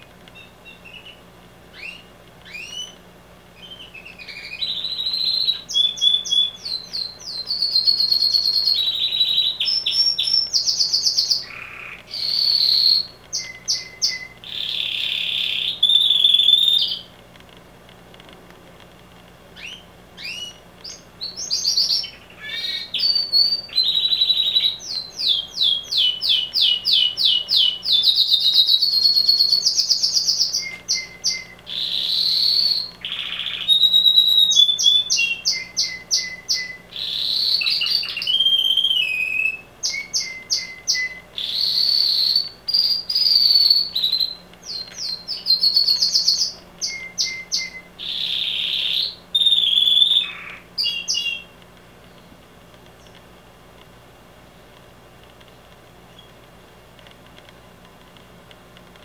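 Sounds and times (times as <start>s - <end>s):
canary singing: 0.0s - 17.2s, 19.5s - 53.3s.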